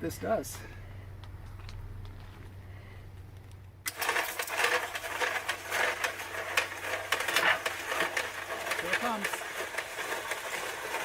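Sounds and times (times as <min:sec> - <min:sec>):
concrete mixer churning: 0:03.9 - 0:11.0.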